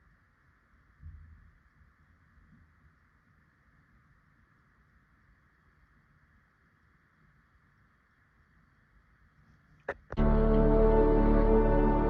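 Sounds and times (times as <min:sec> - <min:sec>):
faint steady hiss: 0:00.0 - 0:12.0
low rumble: 0:10.2 - 0:12.0.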